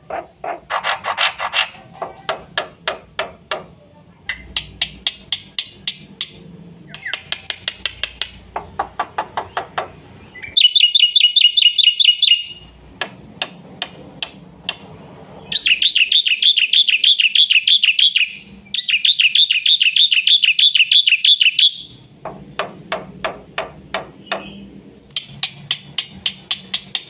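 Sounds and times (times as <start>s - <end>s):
bird sharp clicks: 4.3s - 9.8s.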